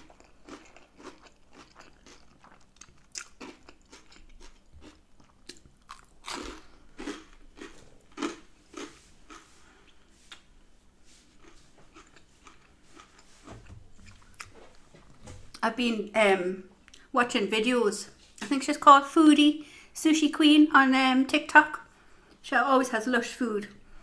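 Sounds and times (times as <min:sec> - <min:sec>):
person chewing crunchy food: 0:00.0 - 0:14.9.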